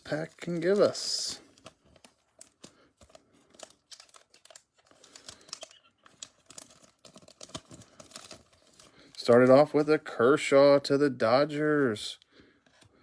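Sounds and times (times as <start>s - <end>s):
foil wrapper crinkling and tearing: 0.0s - 10.2s.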